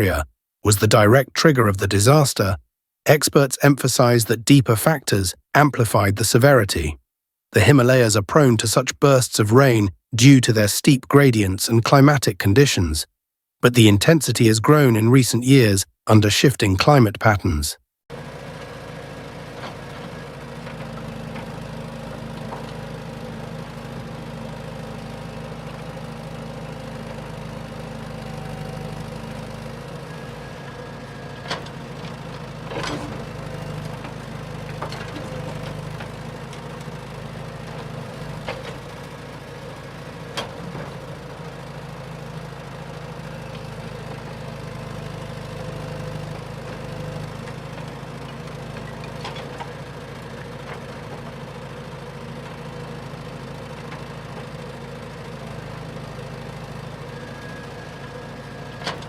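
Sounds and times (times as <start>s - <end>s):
engine running steadily: 18.1s - 59.0s.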